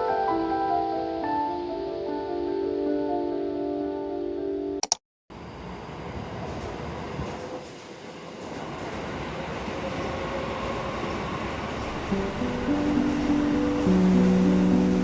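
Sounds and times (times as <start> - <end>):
train wheels rumbling on rails: 5.5 - 15.0.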